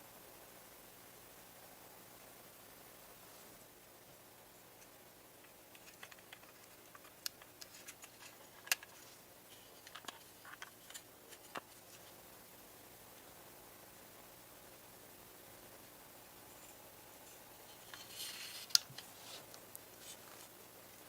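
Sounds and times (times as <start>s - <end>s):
faint hiss: 0.0s - 21.0s.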